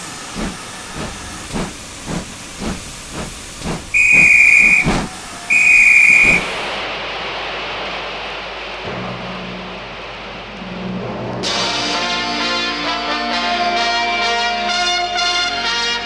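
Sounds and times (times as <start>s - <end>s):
steam whistle blasts: 0.0s - 6.8s
steam locomotive chuffing: 0.0s - 7.0s
steady steam hiss: 0.0s - 8.8s.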